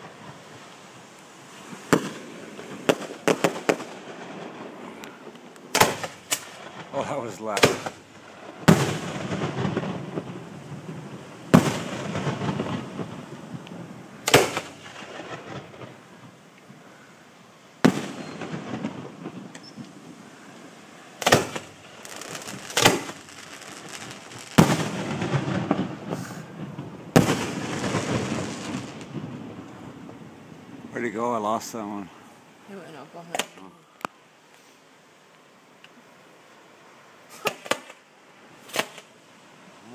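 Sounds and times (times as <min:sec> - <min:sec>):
rumbling crackling firework tail: 0:00.0 - 0:17.1, 0:17.8 - 0:32.2
firework shell bursts: 0:05.7 - 0:06.7, 0:21.2 - 0:25.2, 0:38.6 - 0:39.1.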